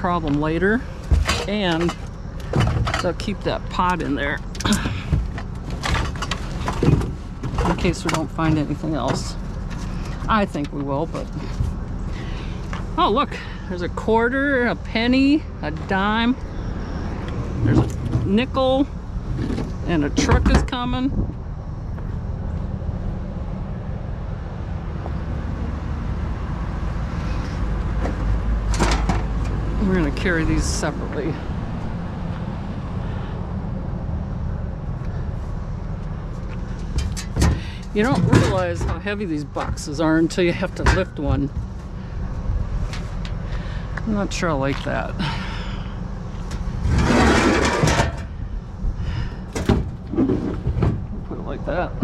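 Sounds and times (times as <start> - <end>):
wind buffeting microphone: 16.4 - 28.7
truck driving past: 21.1 - 37.8
heavy box scraping: 46.8 - 48.2.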